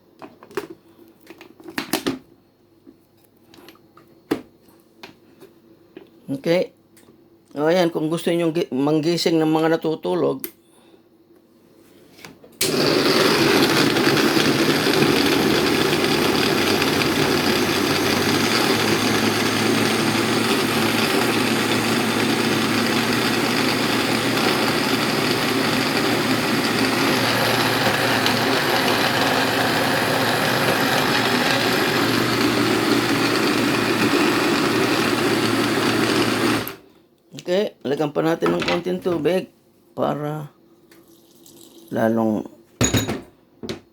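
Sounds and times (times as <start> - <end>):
food processor running: 12.6 - 36.8.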